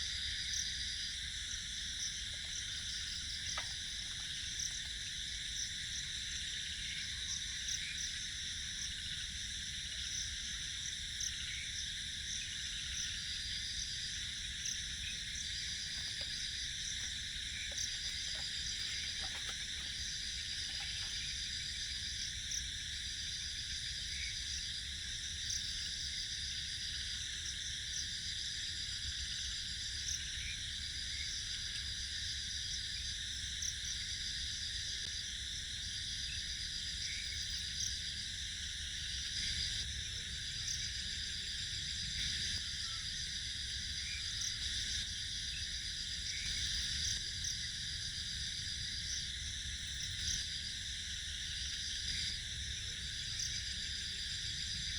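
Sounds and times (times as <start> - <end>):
pulsed insect trill: 0.0 - 28.8
night insects chirring: 0.0 - 54.9.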